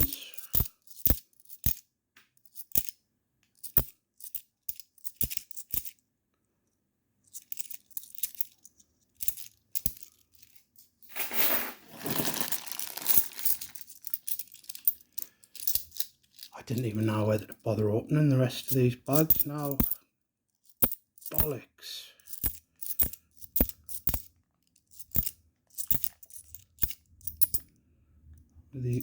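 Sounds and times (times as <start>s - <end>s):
coins clicking: 0.0s - 1.8s, 3.6s - 6.0s, 7.3s - 16.5s, 18.6s - 20.0s, 20.7s - 21.5s, 22.2s - 24.3s, 24.9s - 27.6s
plastic coin bag crinkling: 11.0s - 17.5s, 18.6s - 20.0s.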